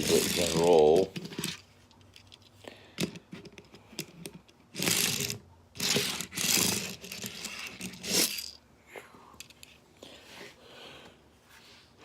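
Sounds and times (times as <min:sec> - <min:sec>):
toy wheels rolling scrape: 0:00.0 - 0:01.6, 0:04.7 - 0:08.6.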